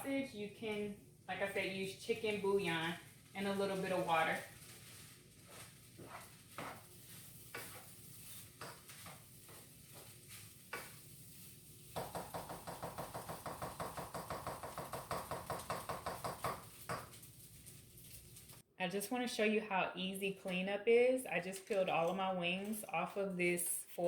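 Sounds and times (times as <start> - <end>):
utensil clinking and scraping pan: 4.8 - 11.1
utensil knocking against cookware: 12.0 - 17.1.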